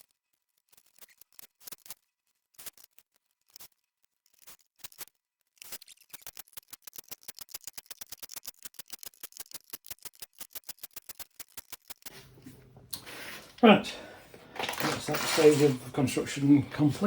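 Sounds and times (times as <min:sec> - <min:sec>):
sharp clicking: 0:05.6 - 0:12.2.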